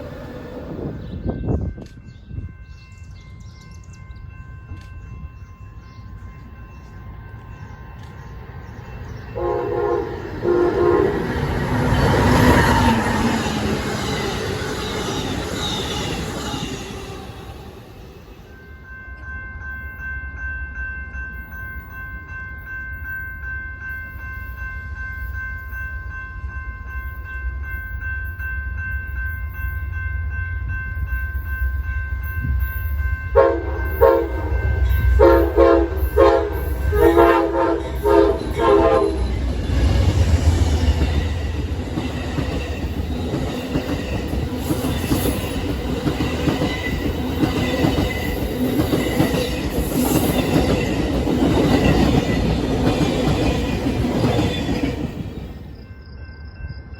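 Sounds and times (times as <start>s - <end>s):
train air horn blasts: 9.4s - 11.5s, 33.4s - 39.3s.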